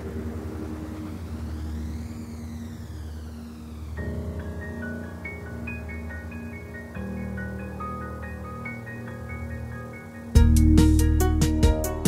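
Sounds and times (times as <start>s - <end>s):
mallet melody over chords and bass: 10.3s - 12.0s.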